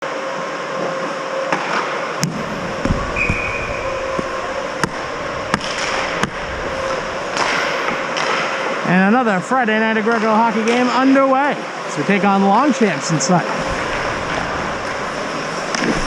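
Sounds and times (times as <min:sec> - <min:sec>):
hockey sticks and puck clacking: 0:01.5 - 0:09.1, 0:09.8 - 0:11.2, 0:13.5 - 0:16.0.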